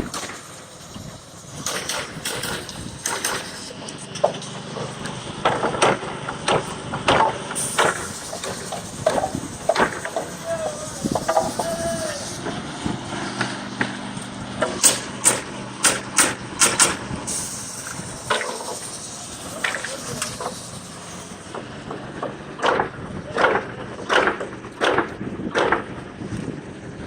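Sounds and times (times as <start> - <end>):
engine idling: 0.0 - 26.0
nails being hammered: 1.6 - 4.4, 5.4 - 12.0, 14.6 - 17.0, 21.9 - 25.9.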